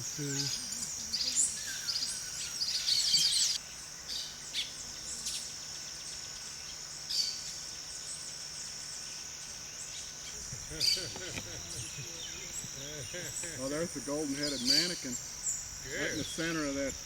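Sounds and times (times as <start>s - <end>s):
birds chirping: 0.0s - 17.0s
high-pitched insect drone: 0.0s - 17.0s.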